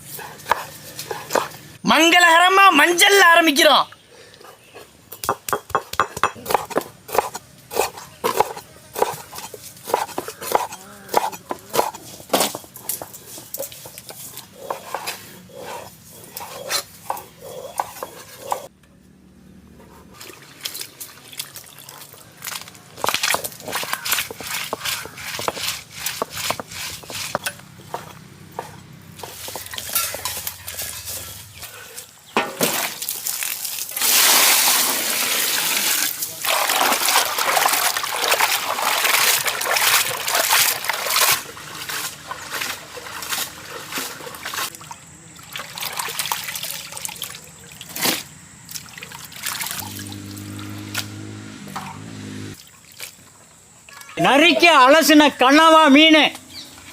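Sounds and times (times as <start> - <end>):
kitchen utensils clinking: 29.3 - 31.4.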